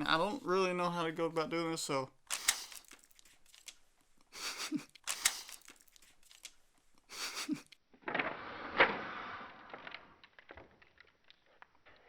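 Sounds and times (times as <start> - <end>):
person sniffing sharply: 2.3 - 2.9, 4.3 - 5.8, 7.1 - 7.7.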